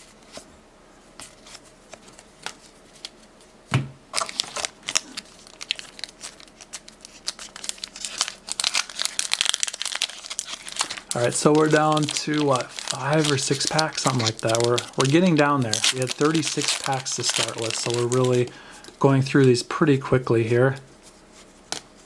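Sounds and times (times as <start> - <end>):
foil wrapper crinkling and tearing: 4.1 - 19.9.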